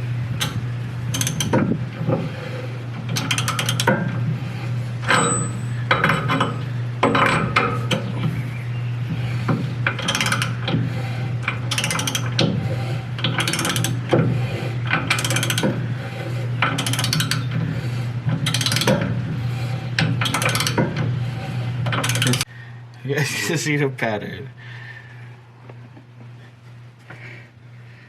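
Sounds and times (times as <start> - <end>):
ratchet wrench clicking: 0.4 - 1.6, 3.1 - 3.9, 9.9 - 10.6, 11.6 - 12.4, 13.2 - 14.0, 14.9 - 15.8, 16.6 - 17.6, 18.4 - 19.0, 20.2 - 20.8, 21.9 - 22.5.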